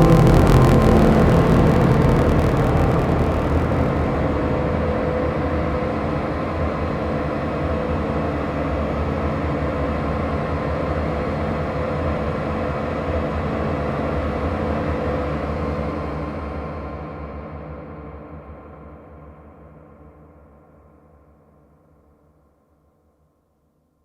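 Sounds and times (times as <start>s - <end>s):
held synth tones: 0.0s - 6.2s
electronic noise drone: 0.0s - 6.4s.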